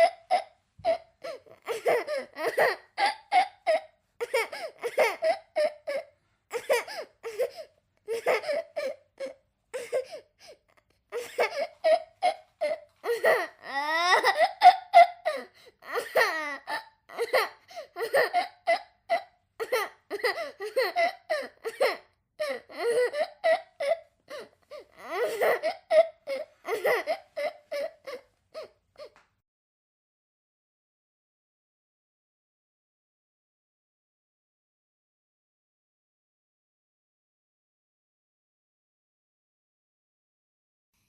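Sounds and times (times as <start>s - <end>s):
child wailing: 0.0s - 6.0s, 11.2s - 21.9s, 22.5s - 29.2s.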